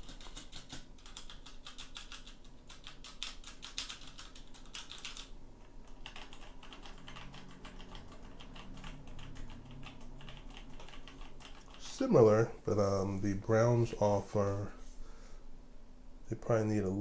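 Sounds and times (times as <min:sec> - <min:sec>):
rapid typing on mechanical keyboard: 0:00.0 - 0:12.0.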